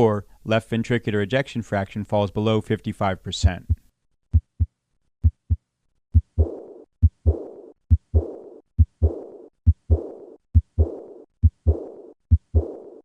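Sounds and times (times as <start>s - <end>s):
heartbeat lub-dub: 3.4s - 13.0s
blowing heart murmur: 6.2s - 12.8s.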